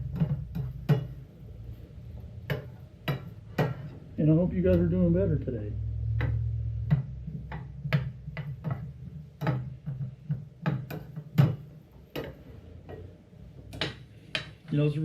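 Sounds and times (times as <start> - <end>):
utensil knocking against frying pan: 0.0 - 1.2, 6.1 - 14.6.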